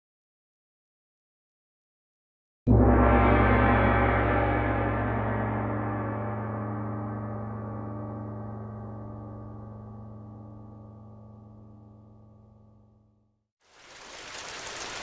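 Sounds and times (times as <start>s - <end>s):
struck gong ringing: 2.7s - 12.9s.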